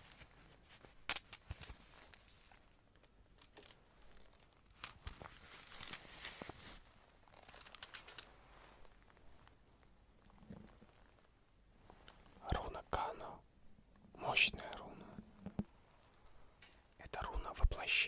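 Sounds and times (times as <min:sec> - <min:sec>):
quiet rustling: 0:00.0 - 0:13.2, 0:14.0 - 0:17.6
pieces clicking: 0:01.1 - 0:01.8.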